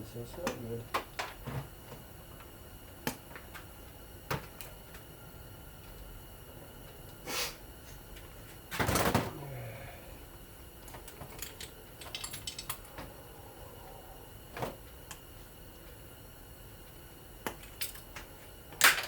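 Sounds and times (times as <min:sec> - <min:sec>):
fan parts knocking and clicking: 0:10.8 - 0:13.2.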